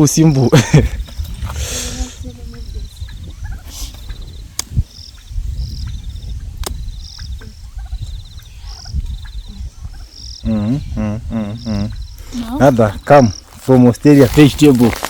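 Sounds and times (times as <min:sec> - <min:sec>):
insects chirping and trilling: 0:00.0 - 0:15.0
sharp clicks: 0:04.1 - 0:04.8, 0:06.6 - 0:07.4.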